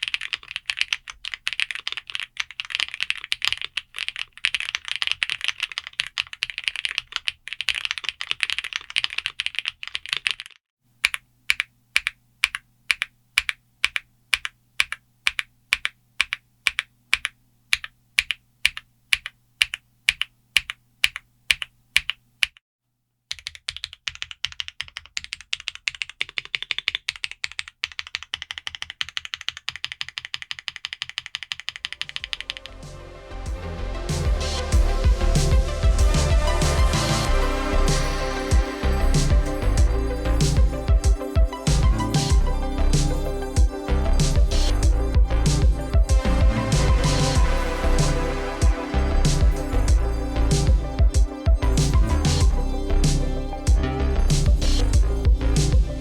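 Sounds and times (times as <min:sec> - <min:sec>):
typing on keyboard: 0:00.0 - 0:22.6, 0:23.3 - 0:32.7.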